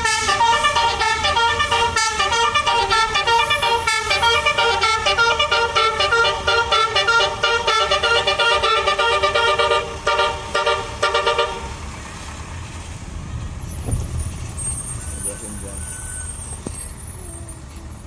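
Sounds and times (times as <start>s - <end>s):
musical bus horn tune: 0.0s - 11.8s
low rumble: 11.7s - 17.2s
thud: 13.8s - 14.4s.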